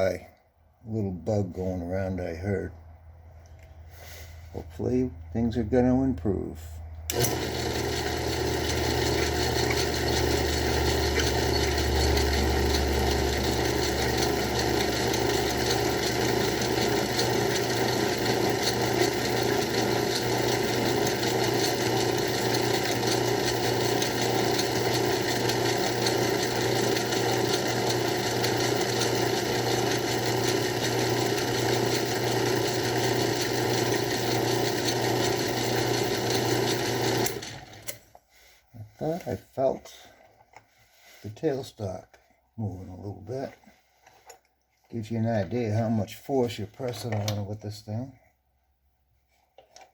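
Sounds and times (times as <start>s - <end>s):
drill bit boring through workpiece: 7.1s - 38.0s
lathe running: 7.1s - 38.0s.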